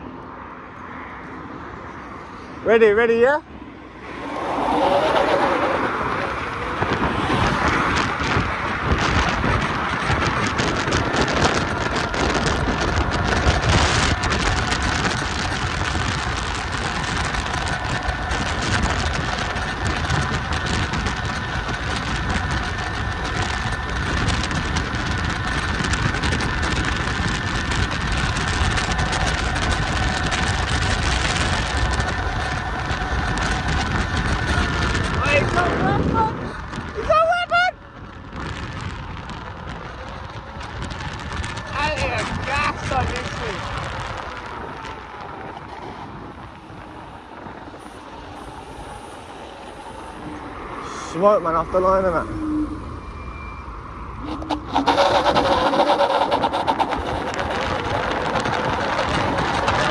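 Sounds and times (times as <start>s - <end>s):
wind rushing over microphone: 0.0s - 59.9s
high motor whine: 0.8s - 37.1s
tyre noise: 3.2s - 51.2s, 54.2s - 59.9s.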